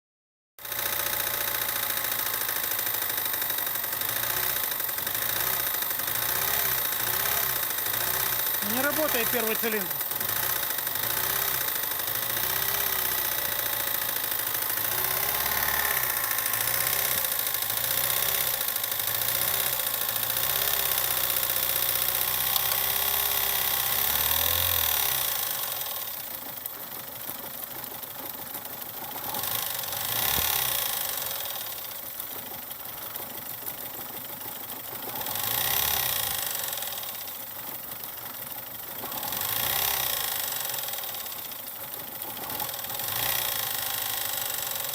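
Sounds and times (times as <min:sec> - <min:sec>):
petrol engine running with knock: 0:00.6 - 0:31.6.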